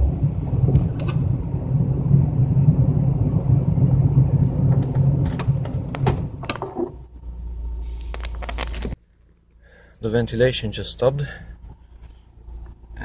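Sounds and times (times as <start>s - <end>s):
car blower fan running: 0.0s - 9.0s.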